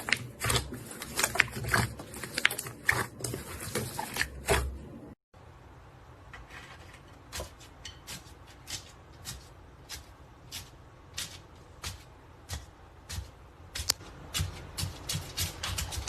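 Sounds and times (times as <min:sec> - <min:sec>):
slime squelching: 0:00.0 - 0:05.2.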